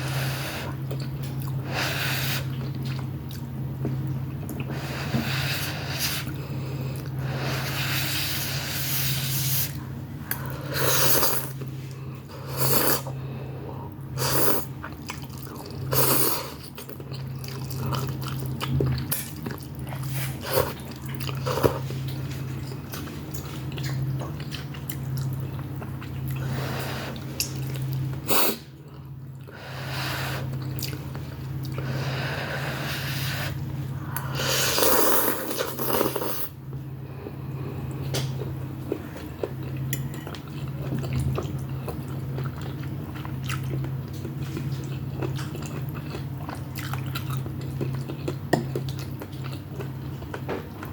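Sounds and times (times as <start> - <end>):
breathing through nose: 1.6 - 2.5, 4.7 - 9.8, 29.5 - 30.5, 31.8 - 35.1
person chewing food: 13.8 - 36.5, 37.1 - 50.9.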